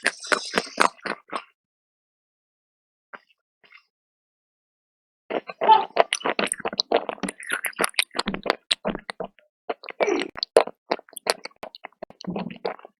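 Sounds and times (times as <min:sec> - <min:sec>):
crunchy chewing: 0:00.0 - 0:01.5, 0:05.3 - 0:13.0.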